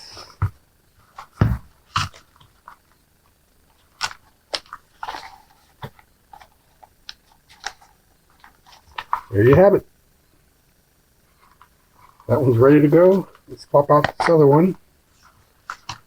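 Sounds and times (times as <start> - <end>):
dull thump: 1.3 - 1.8.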